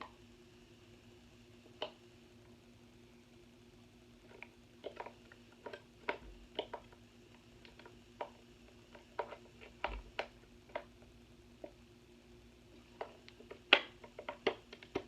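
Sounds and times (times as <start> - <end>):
small plastic clicks and taps: 13.0 - 15.0.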